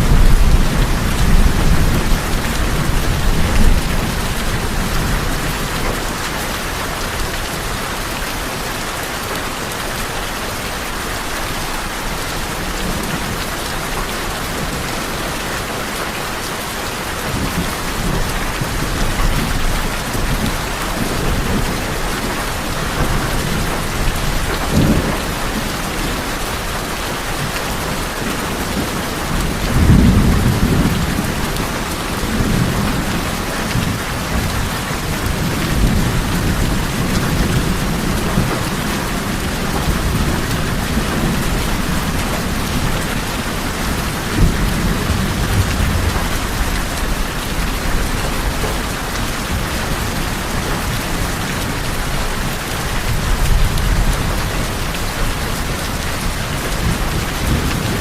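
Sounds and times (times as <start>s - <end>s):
low thunder rumbling: 0.0s - 7.4s, 28.4s - 58.0s
rain on tin roofs: 0.0s - 58.0s.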